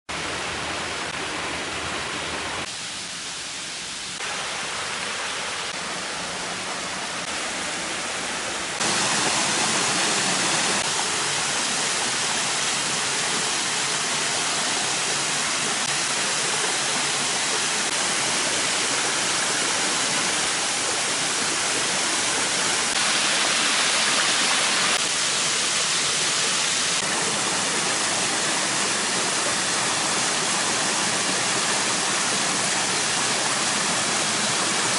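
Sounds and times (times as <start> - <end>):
waterfall pouring: 8.8 - 34.9.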